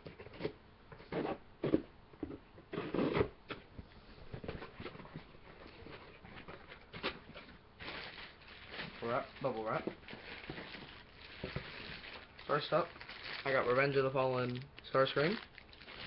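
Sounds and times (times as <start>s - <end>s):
cardboard box tearing and scraping: 2.7s - 3.3s.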